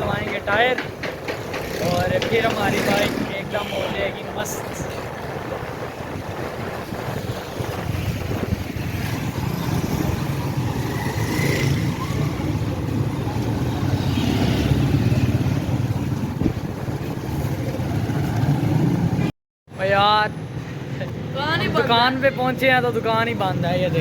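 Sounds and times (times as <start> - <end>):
wind rushing over microphone: 1.8 - 19.3.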